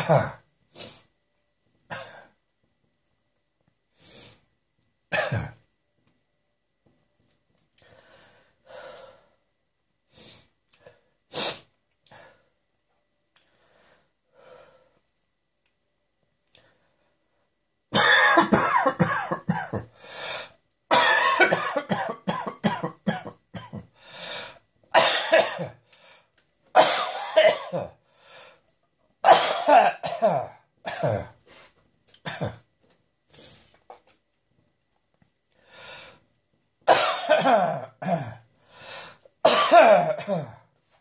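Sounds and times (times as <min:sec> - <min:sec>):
person coughing harshly: 0:00.0 - 0:00.4, 0:05.1 - 0:05.6, 0:18.0 - 0:19.9, 0:20.9 - 0:23.9, 0:24.9 - 0:25.8, 0:26.8 - 0:28.0, 0:29.2 - 0:31.4, 0:32.2 - 0:32.6, 0:36.9 - 0:38.4, 0:39.4 - 0:40.7.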